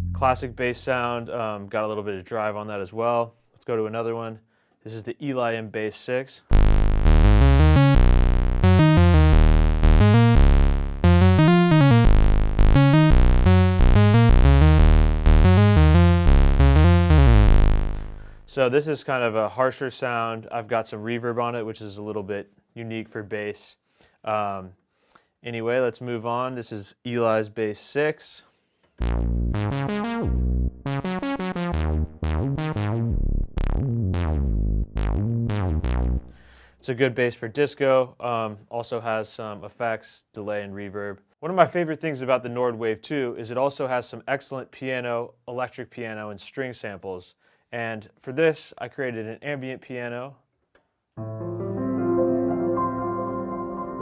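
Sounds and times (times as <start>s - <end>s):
synth bass line: 0.0s - 1.0s, 6.5s - 18.5s, 29.0s - 36.4s.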